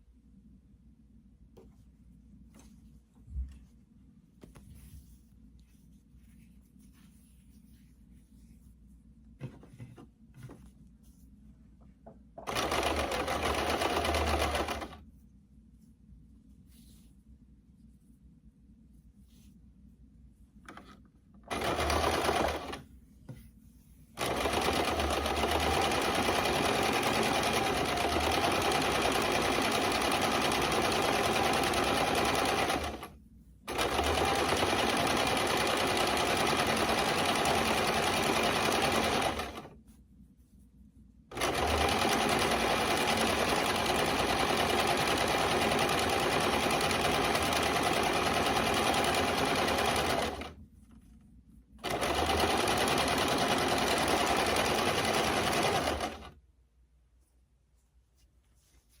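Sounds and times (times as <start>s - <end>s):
sewing machine stitching: 12.4s - 15.0s, 21.5s - 22.8s, 24.2s - 39.7s, 41.3s - 50.6s, 51.8s - 56.4s.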